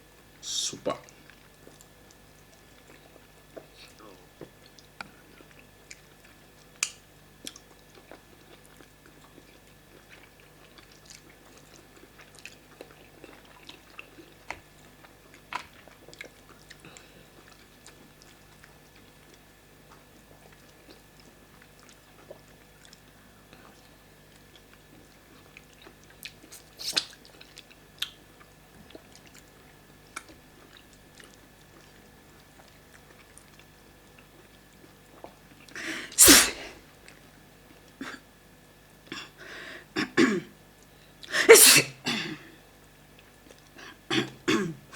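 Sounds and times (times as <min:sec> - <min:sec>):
chewing food: 0:01.0 - 0:35.9, 0:42.8 - 0:44.4
mouth clicks and smacks: 0:06.8 - 0:08.2, 0:26.2 - 0:27.2.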